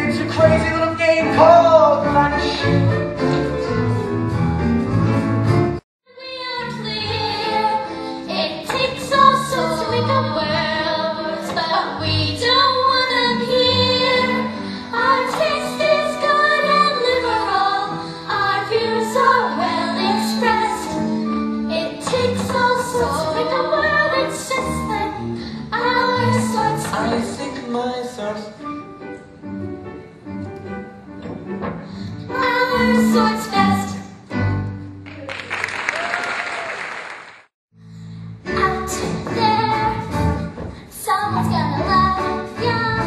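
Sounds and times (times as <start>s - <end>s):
instrumental accompaniment: 0.0s - 35.3s
young performers singing: 6.5s - 27.8s, 32.1s - 34.1s.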